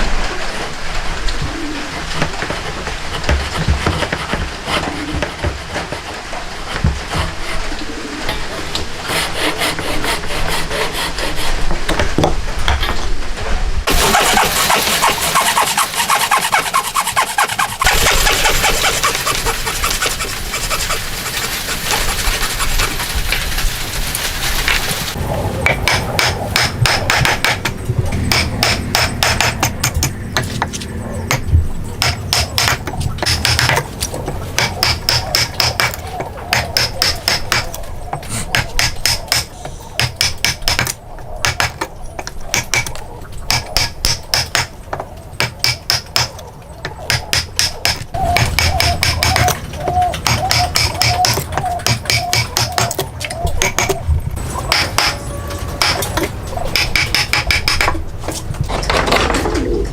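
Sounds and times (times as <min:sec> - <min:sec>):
rhythmic tool strokes on wood: 0:02.2 - 0:07.7, 0:09.0 - 0:11.8, 0:13.9 - 0:58.4
hand tool rasping wood: 0:02.4 - 0:07.6, 0:09.0 - 0:11.7, 0:13.9 - 0:23.6, 0:25.7 - 0:31.4, 0:32.0 - 0:33.8, 0:34.5 - 0:44.7, 0:47.0 - 0:58.0.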